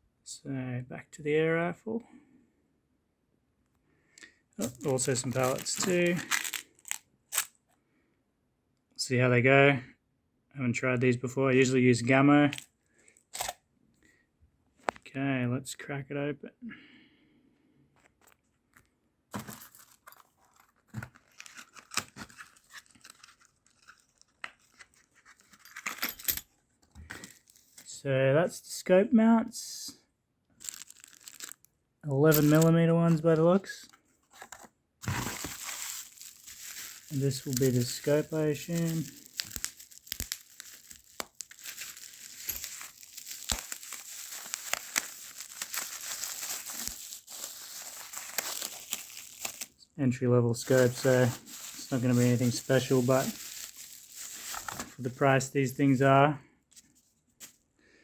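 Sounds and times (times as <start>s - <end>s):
packaging torn and crinkled: 4.6s - 7.6s, 12.5s - 12.7s, 13.3s - 13.6s, 19.4s - 26.0s, 30.6s - 33.5s, 34.4s - 49.8s, 50.7s - 55.0s
small crackles and clicks: 35.9s - 49.6s.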